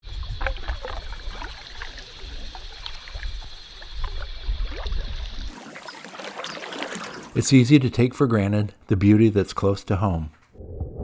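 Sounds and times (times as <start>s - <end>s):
water splashing and dripping: 0.1s - 8.1s
paddle strokes: 5.5s - 7.5s.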